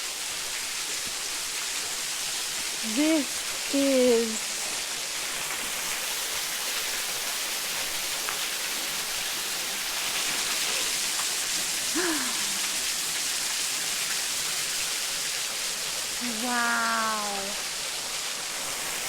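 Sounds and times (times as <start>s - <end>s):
waterfall rushing: 5.5s - 19.0s.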